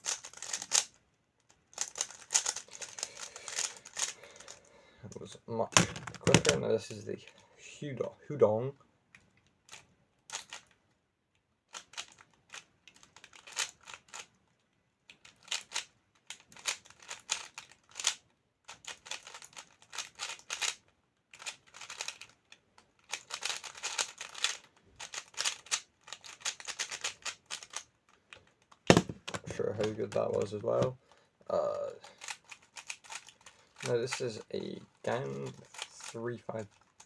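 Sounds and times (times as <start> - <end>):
puzzle cube layers clicking: 0.0 - 0.9, 1.8 - 4.2, 21.4 - 22.4, 23.1 - 27.8.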